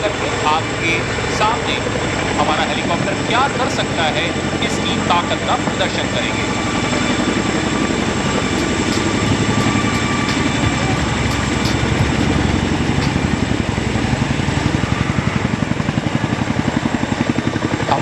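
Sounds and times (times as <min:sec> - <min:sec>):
helicopter high whine: 0:00.0 - 0:18.0
helicopter rotor blade thuds: 0:06.8 - 0:15.2.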